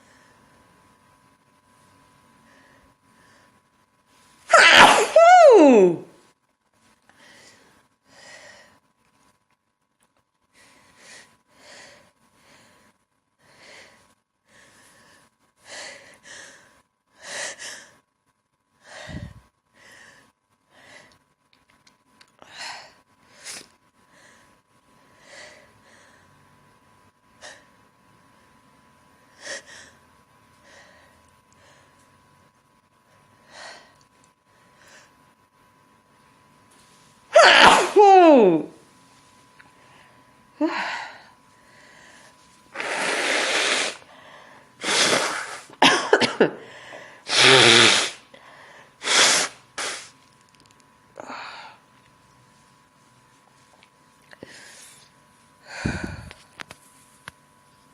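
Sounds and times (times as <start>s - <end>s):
faint steady whine: 0.0s - 57.9s
person sneezing: 4.5s - 6.1s, 37.4s - 38.7s, 44.8s - 46.5s, 47.3s - 48.2s, 49.0s - 50.1s
person gasping breaths: 18.8s - 21.2s, 44.0s - 44.8s, 46.6s - 47.3s, 55.6s - 56.4s.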